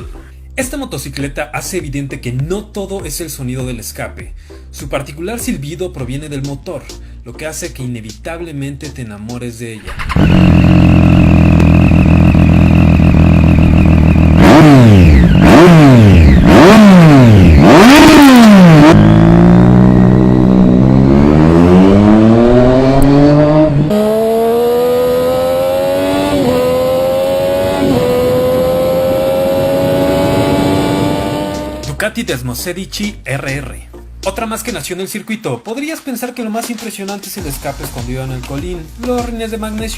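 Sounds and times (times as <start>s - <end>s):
motorcycle engine revving: 9.8s - 32.0s.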